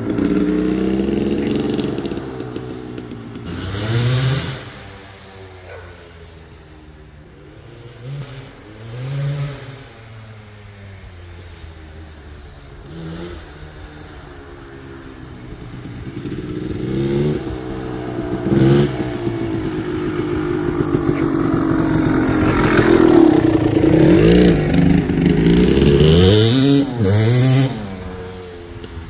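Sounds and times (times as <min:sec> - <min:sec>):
dirt bike engine revving: 0:00.0 - 0:06.2, 0:12.8 - 0:29.0.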